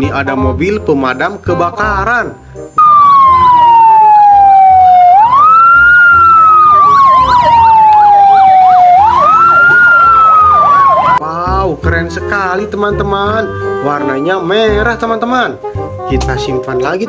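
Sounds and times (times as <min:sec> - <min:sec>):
fast up-and-down siren: 0:02.8 - 0:11.2
fire engine siren wailing: 0:02.8 - 0:11.2.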